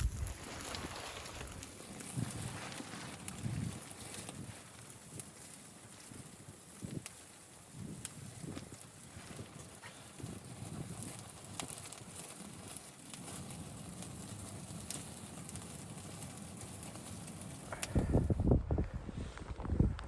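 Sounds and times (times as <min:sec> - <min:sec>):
footsteps crunching in snow: 0:00.0 - 0:04.7.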